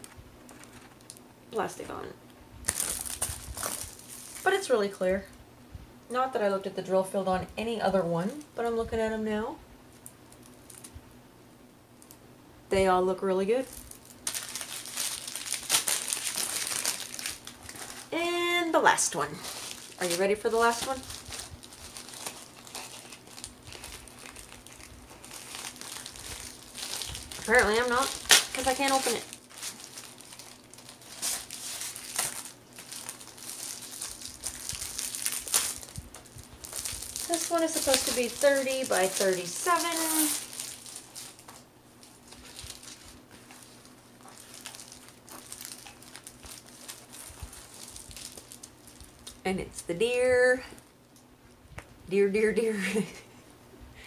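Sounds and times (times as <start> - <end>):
plastic packaging crinkling: 0.0 - 1.7, 2.6 - 4.7, 10.0 - 11.0, 13.6 - 49.4.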